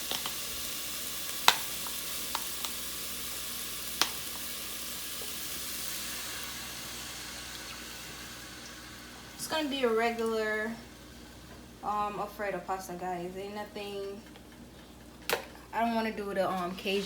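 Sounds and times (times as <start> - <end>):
cream sizzling in hot oil: 0.0 - 11.8.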